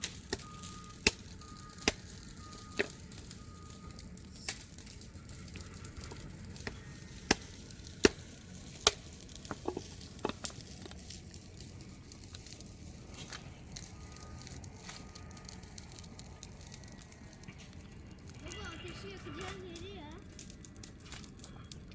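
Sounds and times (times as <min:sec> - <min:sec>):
stones knocking together: 0:00.0 - 0:03.3, 0:05.4 - 0:11.1
low steady rumble: 0:00.0 - 0:21.9.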